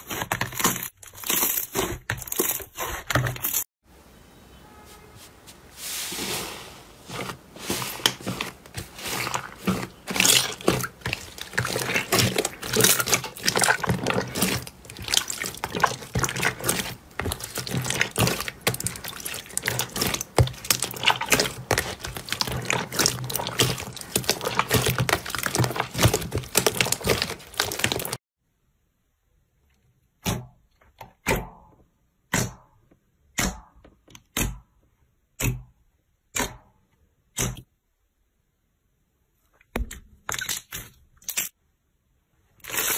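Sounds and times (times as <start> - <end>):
slime squished by hand: 7.1 - 28.2.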